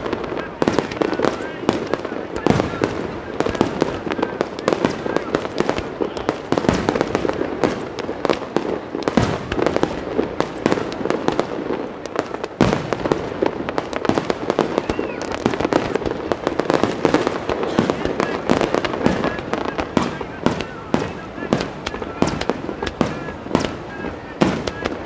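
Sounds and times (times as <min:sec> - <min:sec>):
fireworks bursts and crackling: 0:00.0 - 0:25.0
heavy fireworks booms: 0:00.0 - 0:25.0.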